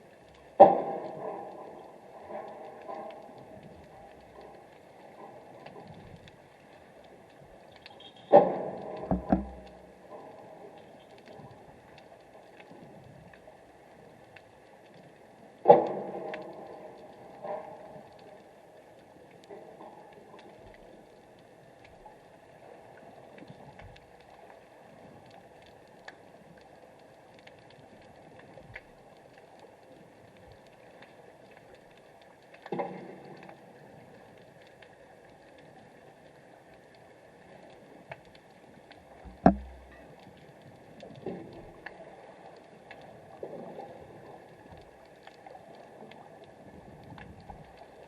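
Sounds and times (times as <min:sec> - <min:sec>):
faint ticks: 0:00.0 - 0:48.0
underwater water wash: 0:00.0 - 0:48.0
splashing knocks: 0:09.1 - 0:09.9, 0:39.3 - 0:40.0.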